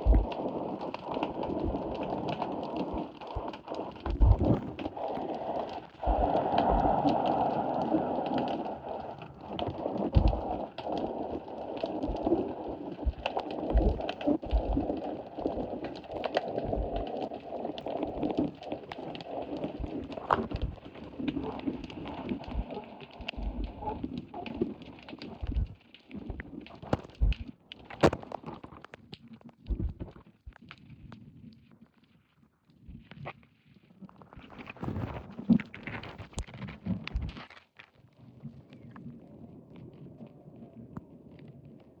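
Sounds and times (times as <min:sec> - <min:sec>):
sea water sloshing and slapping: 0:00.0 - 0:29.0.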